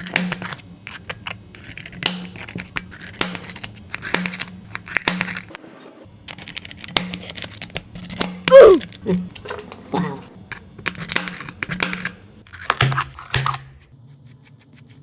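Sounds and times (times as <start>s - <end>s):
glass cracking and scraping: 0.0s - 5.5s.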